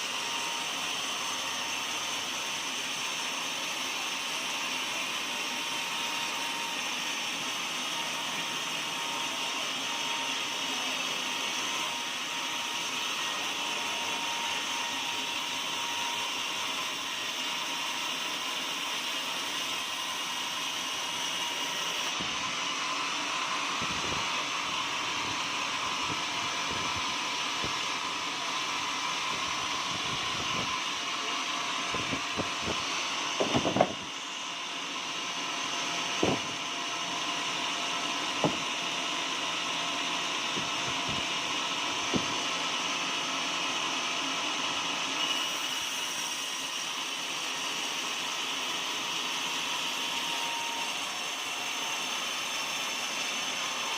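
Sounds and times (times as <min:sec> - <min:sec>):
sawmill sawing a log: 0:00.0 - 0:53.9
wood knocks: 0:33.4 - 0:34.0, 0:36.2 - 0:36.4.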